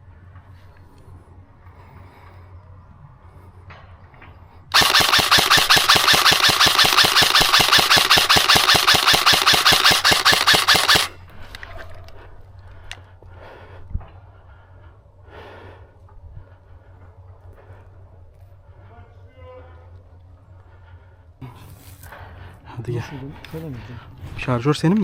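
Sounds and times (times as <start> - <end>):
airsoft gun full-auto burst: 4.7 - 11.2.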